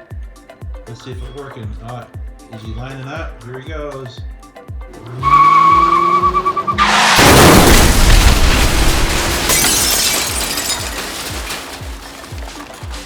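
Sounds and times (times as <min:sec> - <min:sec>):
background music with steady beat: 0:00.0 - 0:05.6
toy blocks crashing and shattering: 0:06.8 - 0:13.0.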